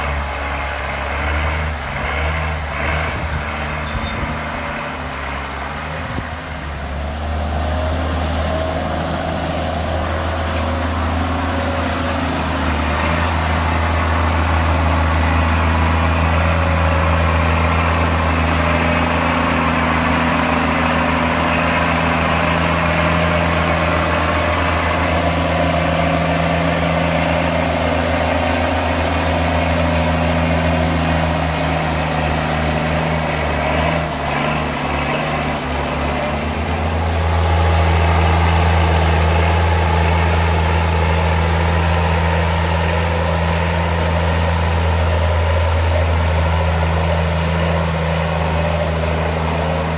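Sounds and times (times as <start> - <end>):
tractor diesel engine running: 0.0 - 49.9.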